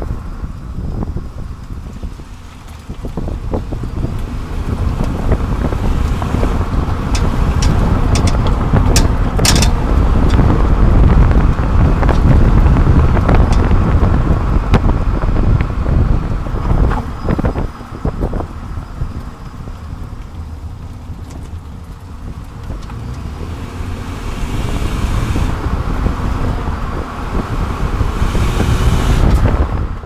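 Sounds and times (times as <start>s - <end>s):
road and tyre rumble: 0.0s - 30.0s
wind buffeting: 0.0s - 30.0s
sharp clicks and knocks: 6.0s - 10.5s.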